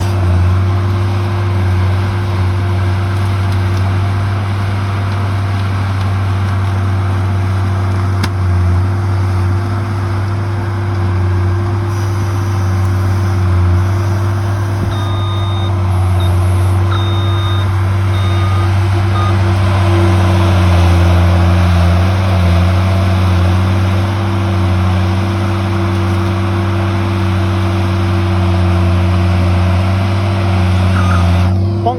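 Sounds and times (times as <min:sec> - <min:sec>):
loader engine running: 0:00.0 - 0:31.9
short beeps: 0:14.8 - 0:19.5.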